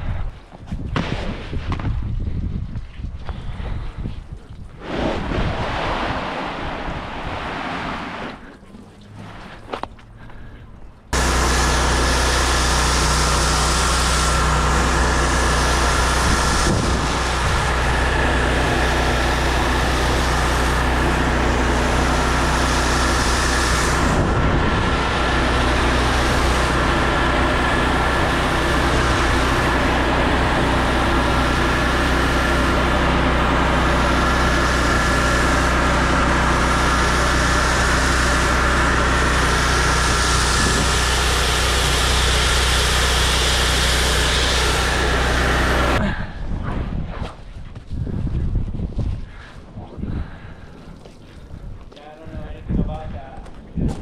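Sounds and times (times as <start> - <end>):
pressure washer engine drone: 5.7 - 46.2
water spray hissing: 11.2 - 46.0.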